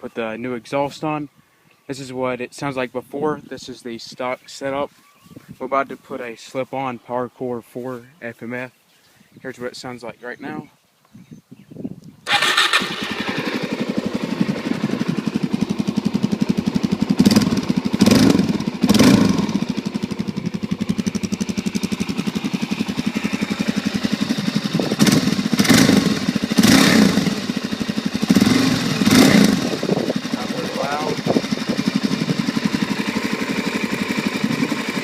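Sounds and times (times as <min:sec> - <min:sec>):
motorcycle engine idling and revving: 0:12.3 - 0:35.0.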